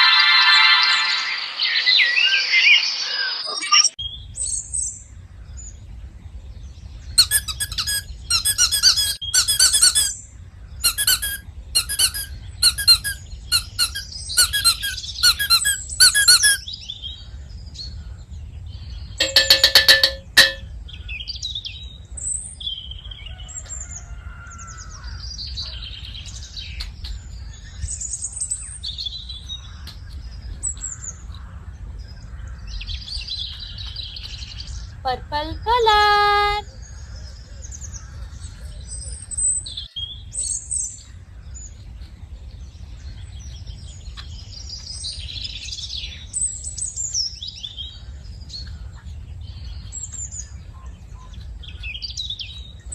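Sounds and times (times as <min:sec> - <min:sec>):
faint bird chirps: 0:07.1 - 0:18.3.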